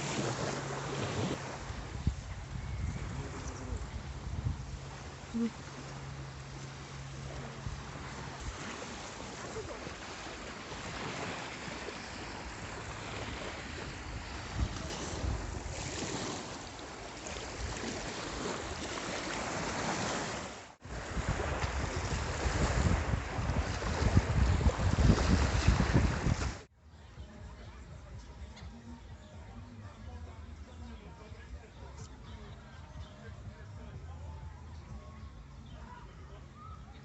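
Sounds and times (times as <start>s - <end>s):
sea waves washing ashore: 0.0s - 26.7s
wind buffeting microphone: 1.2s - 5.4s, 10.0s - 16.6s, 20.8s - 26.7s.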